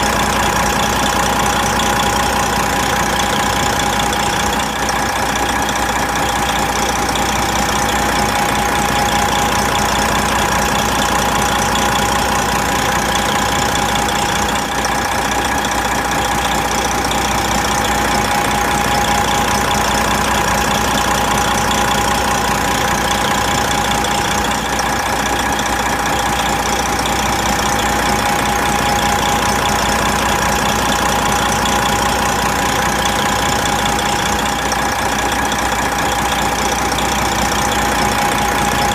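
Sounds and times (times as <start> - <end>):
truck diesel engine idling: 0.0 - 38.9.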